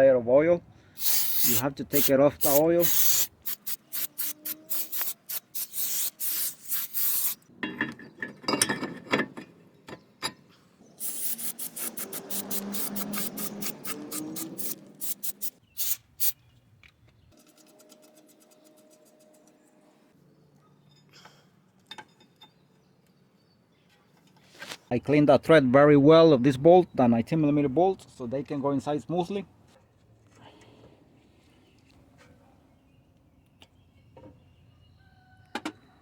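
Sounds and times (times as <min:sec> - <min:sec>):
scrubbing brake parts: 0:01.0 - 0:07.4, 0:10.9 - 0:16.4.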